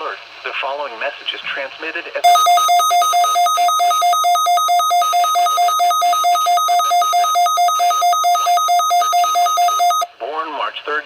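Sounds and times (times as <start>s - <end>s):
rapid electronic beeping: 2.2s - 10.1s.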